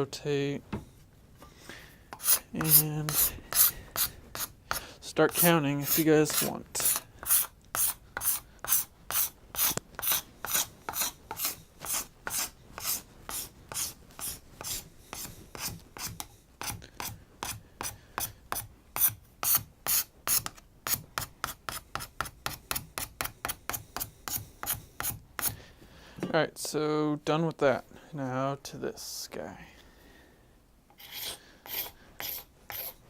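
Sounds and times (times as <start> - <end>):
sandpaper rubbing on wood: 2.2 - 4.6, 5.3 - 16.2, 31.0 - 33.0.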